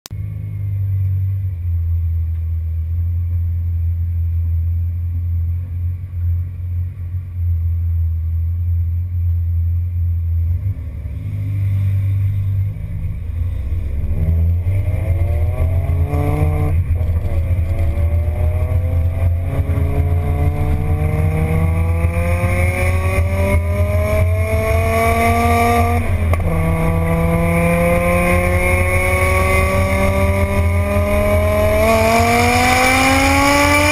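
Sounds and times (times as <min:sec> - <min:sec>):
car engine idling: 0:00.2 - 0:32.4
car engine accelerating hard: 0:10.2 - 0:33.9.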